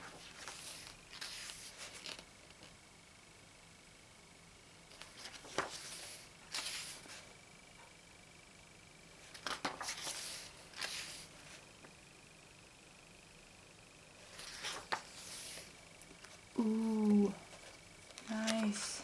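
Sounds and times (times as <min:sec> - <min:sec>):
book pages turning: 0:00.0 - 0:02.7, 0:04.9 - 0:07.3, 0:09.2 - 0:11.6, 0:14.2 - 0:16.4, 0:17.5 - 0:18.9.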